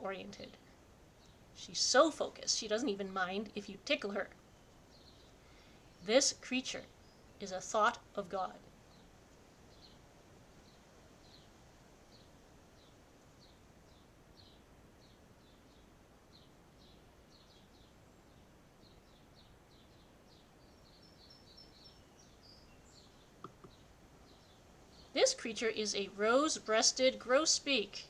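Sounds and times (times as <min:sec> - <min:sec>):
small bird chirping: 0:00.0 - 0:28.0
faint taps: 0:23.4 - 0:23.8.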